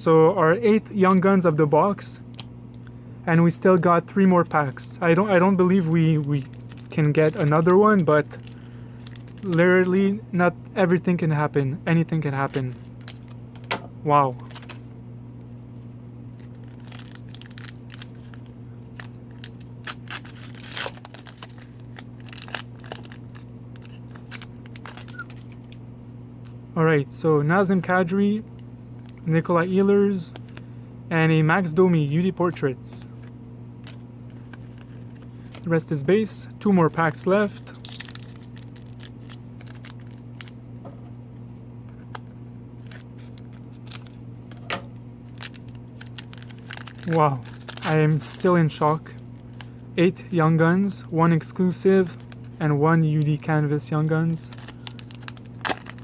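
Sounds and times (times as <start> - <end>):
steady low hum: 0.0 - 56.0
cards and foil rustling: 3.5 - 10.2, 12.2 - 14.8, 16.4 - 25.8, 32.5 - 36.0, 36.8 - 41.1, 41.8 - 56.0
wrapper tearing and crinkling: 5.7 - 9.6, 12.5 - 13.7, 14.3 - 14.8, 16.4 - 25.8, 33.8 - 35.6, 37.6 - 40.6, 42.0 - 49.8, 54.5 - 56.0.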